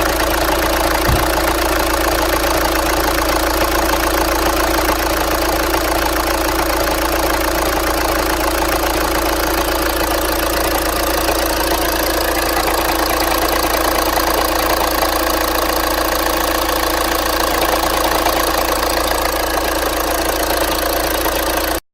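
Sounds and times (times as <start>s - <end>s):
diesel engine idling with knock: 0.0s - 21.8s.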